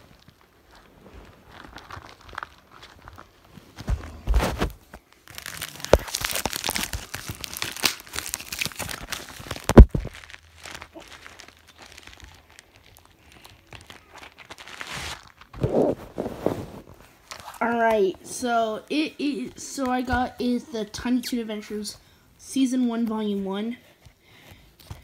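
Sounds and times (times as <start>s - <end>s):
packaging crinkling and rustling: 0.0s - 18.0s.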